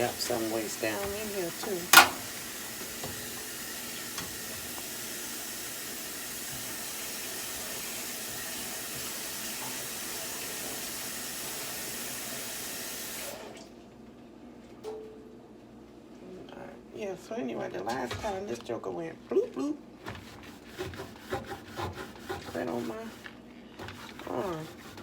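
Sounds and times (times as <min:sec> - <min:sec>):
water running from tap: 0:00.0 - 0:13.7, 0:20.2 - 0:25.0.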